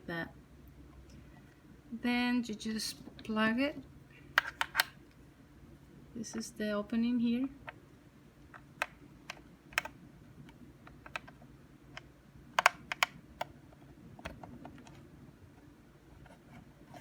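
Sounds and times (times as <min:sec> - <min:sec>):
plastic parts clicking: 0:08.6 - 0:13.5.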